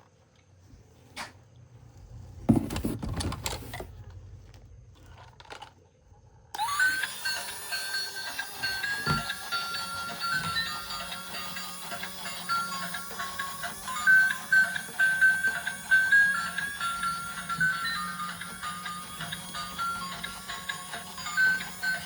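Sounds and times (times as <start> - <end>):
plastic toy vehicles rattling: 4.9 - 5.9
background music: 6.9 - 22.0.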